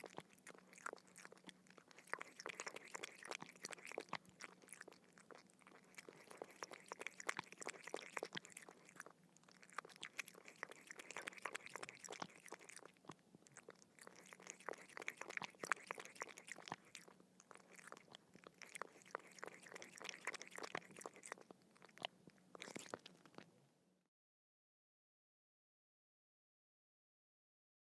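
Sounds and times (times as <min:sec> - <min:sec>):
dog lapping water: 0:00.0 - 0:23.4.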